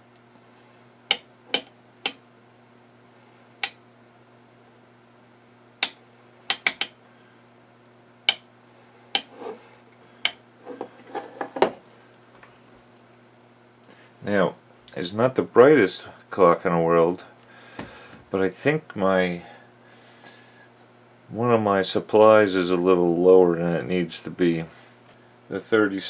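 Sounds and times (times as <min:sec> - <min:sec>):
low electrical hum: 0:00.0 - 0:26.0
sharp clicks and light taps: 0:05.8 - 0:06.9.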